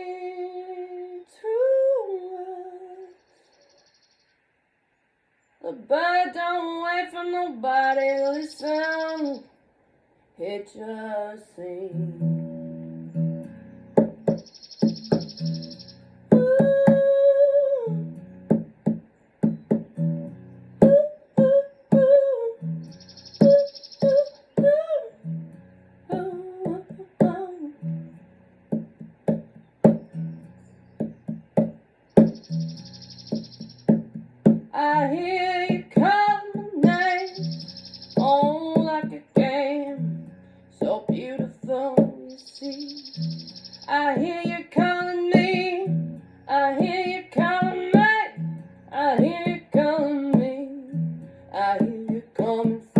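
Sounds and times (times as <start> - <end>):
acoustic guitar chords: 11.6 - 52.9
plucked strings: 12.0 - 17.3, 17.9 - 42.3, 43.2 - 52.9.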